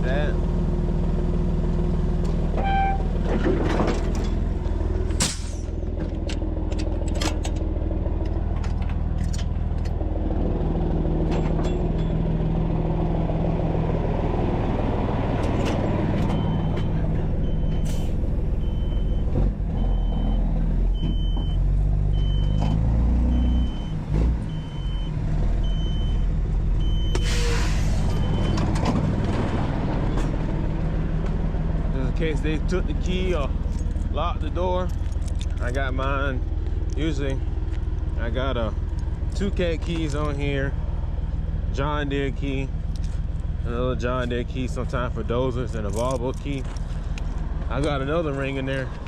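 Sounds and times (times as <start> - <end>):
heavy diesel machinery running: 0.0 - 49.0
backup alarm beeping: 2.6 - 3.1, 16.3 - 20.4, 21.0 - 22.6.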